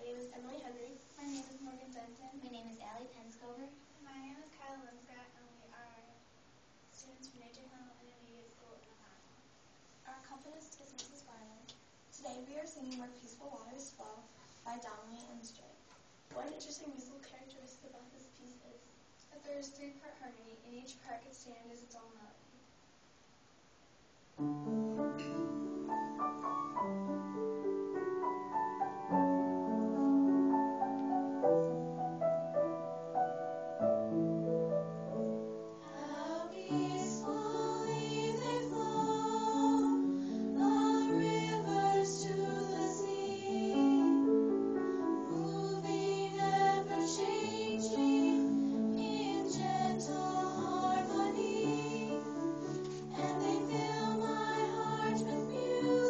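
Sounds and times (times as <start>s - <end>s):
piano accompaniment: 24.4s - 56.0s
young voices singing: 35.8s - 44.3s, 45.0s - 56.0s.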